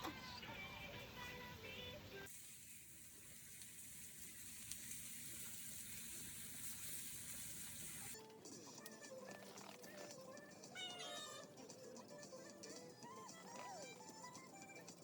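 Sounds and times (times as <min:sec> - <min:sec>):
steady hiss: 0:00.7 - 0:08.2
background music: 0:08.2 - 0:15.0.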